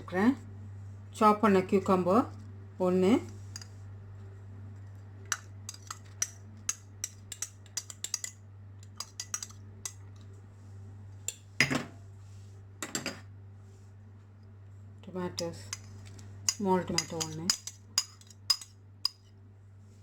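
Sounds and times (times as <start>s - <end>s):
steady low hum: 0.0s - 20.0s
utensils clinking against dishes: 15.4s - 19.2s.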